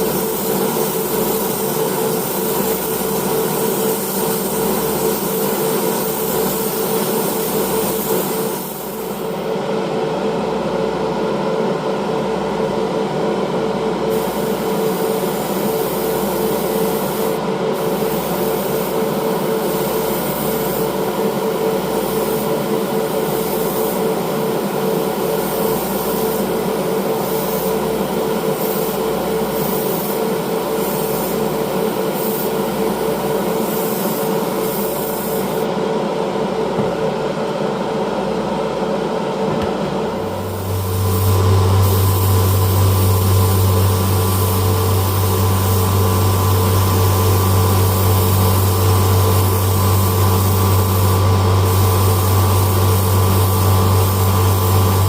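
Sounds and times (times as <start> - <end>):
machine running with hum: 39.4 - 55.0.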